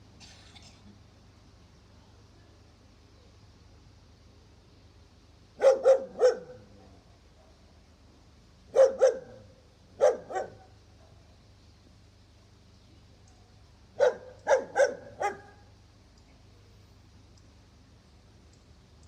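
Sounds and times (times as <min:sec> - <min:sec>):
dog barking: 0:05.6 - 0:06.7, 0:08.7 - 0:11.2, 0:14.0 - 0:15.6.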